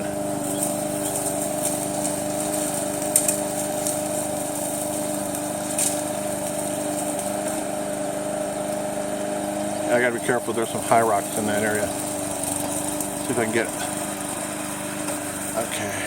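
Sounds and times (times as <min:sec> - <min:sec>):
lawn mower engine running: 0:00.0 - 0:16.0.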